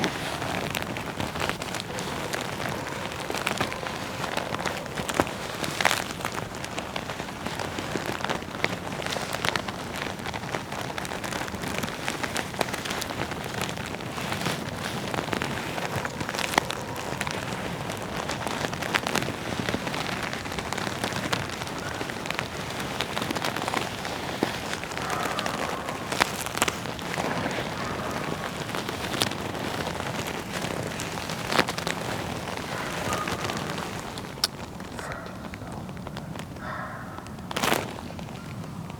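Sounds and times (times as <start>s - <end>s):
leather creaks and clicks: 0.0s - 38.9s
leather rubbing crackle: 0.0s - 38.9s.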